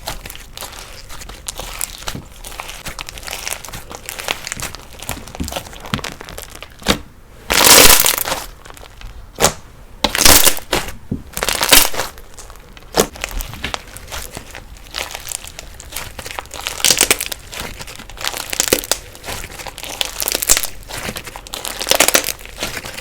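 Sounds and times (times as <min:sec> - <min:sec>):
slime crackling: 0:00.0 - 0:23.0
slime squishing and popping: 0:00.0 - 0:23.0.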